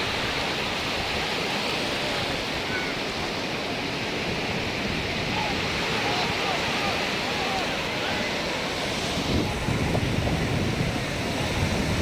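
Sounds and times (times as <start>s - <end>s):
sea surf on a beach: 0.0s - 12.0s
faint distant voices: 1.1s - 12.0s.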